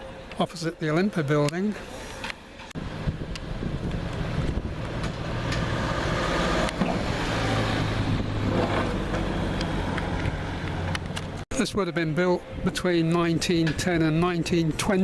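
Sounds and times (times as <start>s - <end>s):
tyre and road noise: 0.0s - 11.5s
vehicle engine hum: 2.6s - 11.4s.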